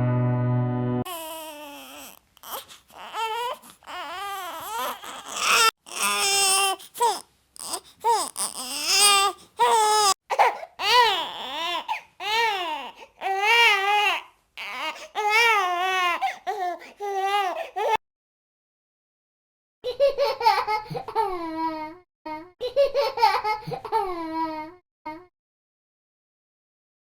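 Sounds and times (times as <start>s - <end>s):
newborn baby crying: 1.1s - 18.0s.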